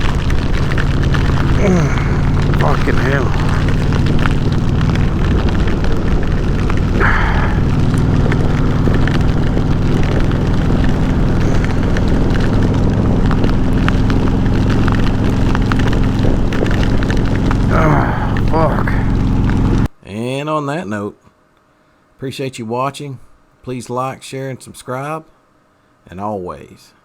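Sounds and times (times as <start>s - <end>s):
motorcycle engine cruising: 0.0s - 19.9s
wind buffeting microphone: 0.0s - 19.9s
small ticks: 3.3s - 17.7s.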